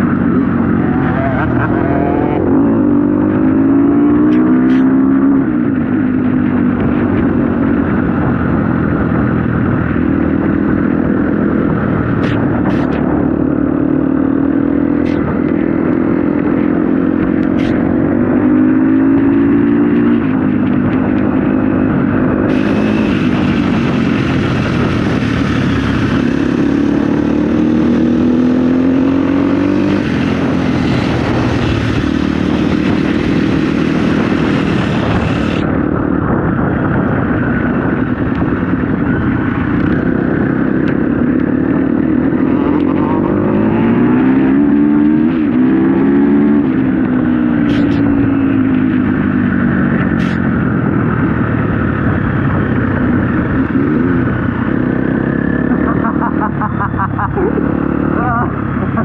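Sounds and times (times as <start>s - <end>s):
dirt bike engine revving: 22.4s - 35.7s.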